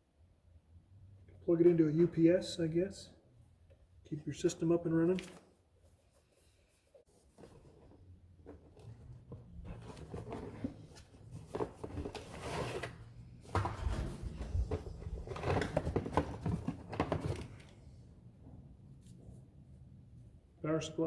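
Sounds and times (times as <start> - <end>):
cardboard packaging rustling: 7.1 - 17.8.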